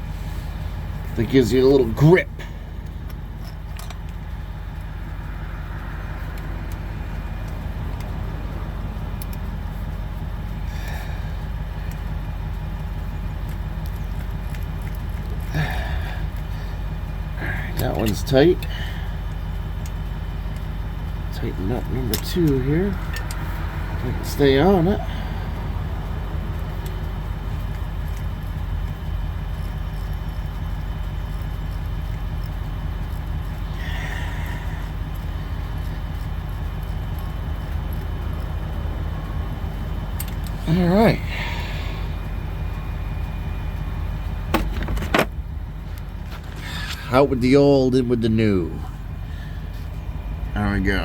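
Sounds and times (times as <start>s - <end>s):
vehicle engine idling: 0.0s - 51.0s
hand tools clicking on metal: 6.2s - 9.5s, 21.8s - 25.0s, 40.0s - 41.4s.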